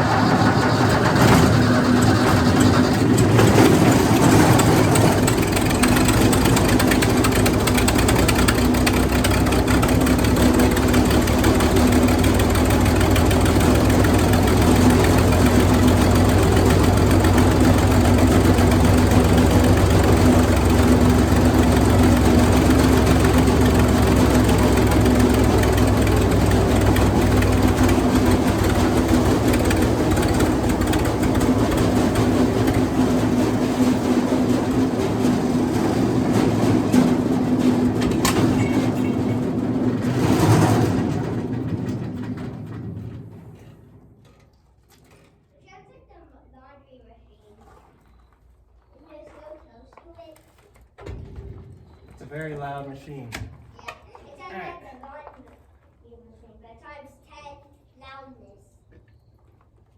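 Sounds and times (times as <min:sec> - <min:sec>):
mechanical clatter: 0:00.0 - 0:45.2
wood chipper engine running: 0:00.0 - 0:45.2.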